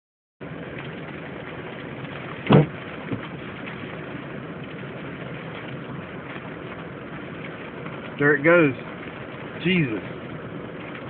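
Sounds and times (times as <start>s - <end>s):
rain on a truck cab: 0.4s - 11.0s
loud thump: 2.4s - 3.3s.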